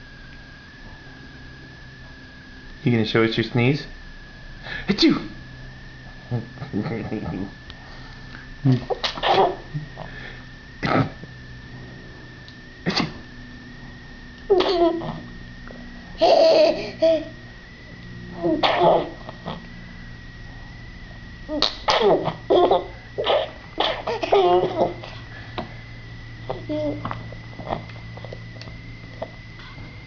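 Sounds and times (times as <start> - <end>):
child sneezing: 8.9 - 9.6, 18.4 - 19.2, 21.5 - 22.4, 23.2 - 25.1
child laughing: 14.5 - 15.2, 16.2 - 17.4, 21.5 - 25.2, 26.5 - 27.1.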